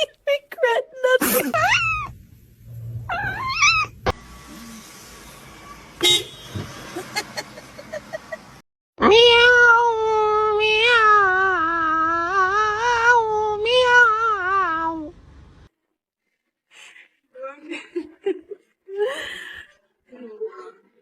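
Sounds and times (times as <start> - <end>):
cat yowling: 1.6 - 2.2, 3.0 - 4.2, 9.0 - 14.9.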